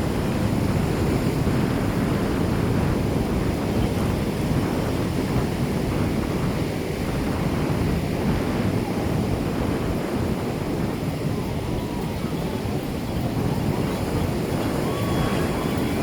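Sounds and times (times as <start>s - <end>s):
surf washing onto shore: 0.0s - 16.0s
wind buffeting microphone: 0.0s - 16.0s.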